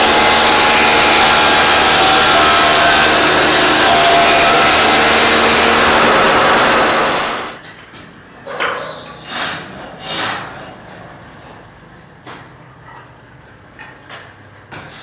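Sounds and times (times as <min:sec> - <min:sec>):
wood being filed by hand: 0:00.0 - 0:07.6
woodworking machine cutting off: 0:00.0 - 0:07.6.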